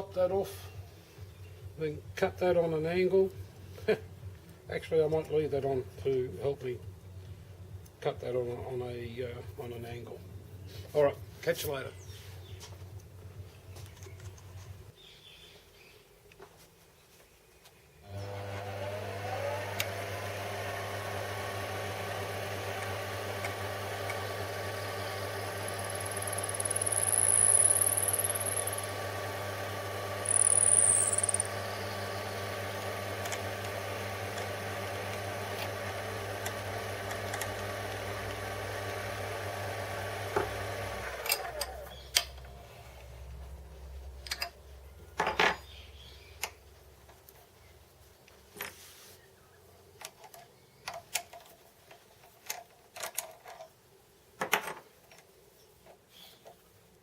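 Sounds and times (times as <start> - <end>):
electric saw motor humming: 18.1 - 42.0.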